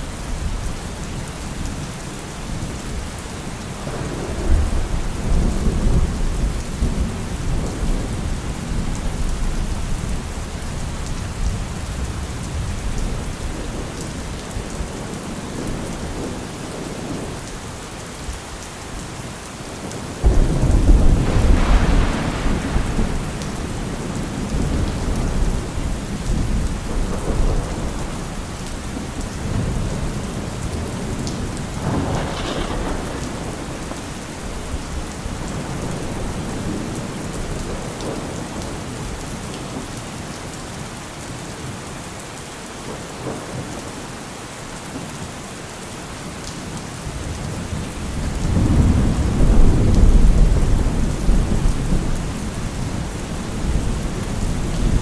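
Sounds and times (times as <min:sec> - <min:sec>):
steady rain: 0:00.0 - 0:55.0
thunder rumbling: 0:03.6 - 0:17.4, 0:19.9 - 0:39.2, 0:47.1 - 0:55.0.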